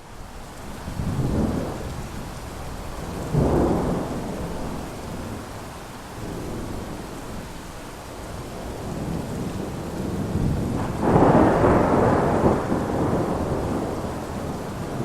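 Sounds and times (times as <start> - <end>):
steady rain hiss: 0.0 - 15.0
rolling thunder: 0.9 - 2.3, 3.0 - 5.4, 8.6 - 15.0.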